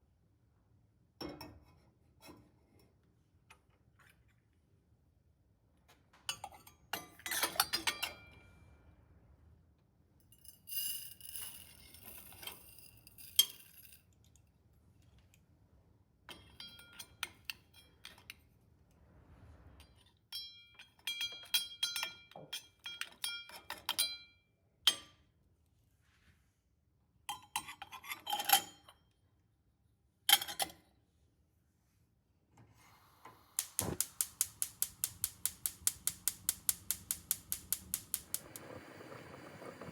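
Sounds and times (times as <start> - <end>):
rapid even ticking: 33.6 - 39.9.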